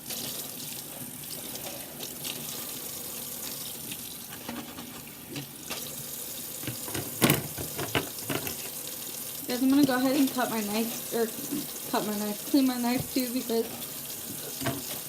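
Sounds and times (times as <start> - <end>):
knocks in a sink: 6.6 - 8.6
tap running into a sink: 6.6 - 8.8, 12.8 - 15.0.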